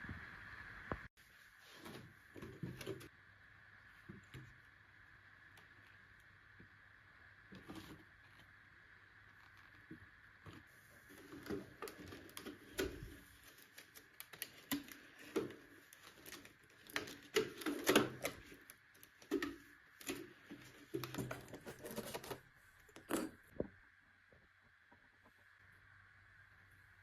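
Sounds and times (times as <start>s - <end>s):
faint steady hum: 0.0s - 27.0s
small objects clicking and rustling: 10.5s - 23.4s.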